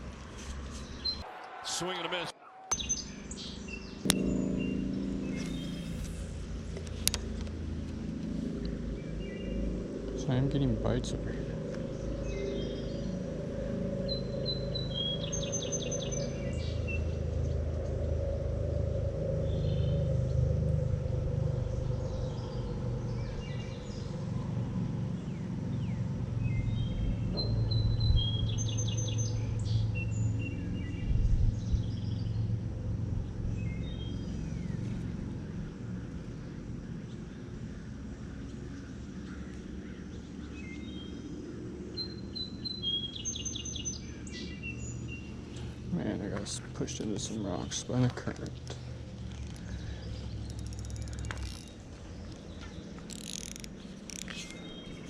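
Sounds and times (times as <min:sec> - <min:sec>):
songbird whistling with trill: 0:02.7 - 0:03.9
low rushing noise: 0:03.0 - 0:28.6.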